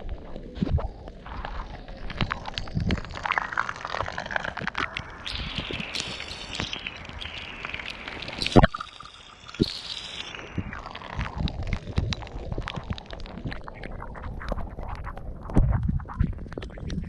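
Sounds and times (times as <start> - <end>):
rainwater splashing and dripping: 1.4 - 14.7.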